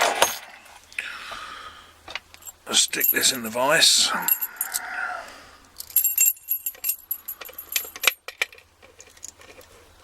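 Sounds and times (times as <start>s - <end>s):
padlock clinking against metal: 2.4s - 3.6s, 5.8s - 9.7s.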